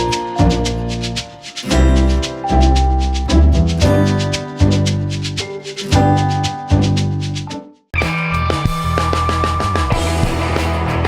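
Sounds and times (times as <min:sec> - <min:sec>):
music with sustained chords and beat: 0:08.1 - 0:11.0.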